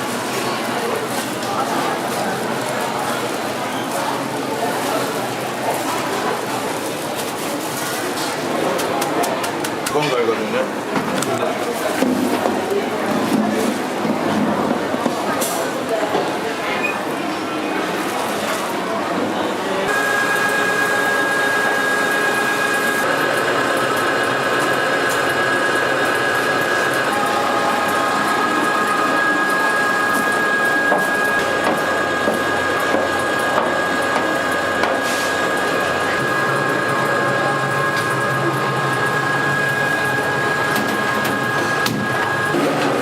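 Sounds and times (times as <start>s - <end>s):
machine whining: 19.9s - 43.0s.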